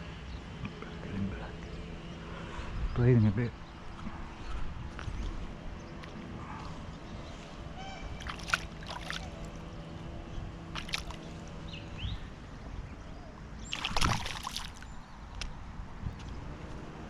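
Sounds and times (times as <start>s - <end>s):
water splashing: 8.1s - 9.7s, 10.7s - 11.6s, 13.6s - 15.0s.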